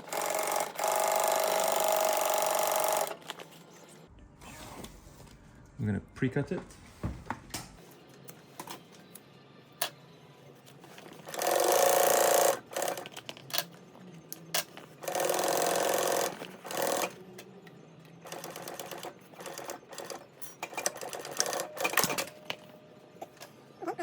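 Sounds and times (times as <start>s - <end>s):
sewing machine stitching: 0.0s - 3.2s.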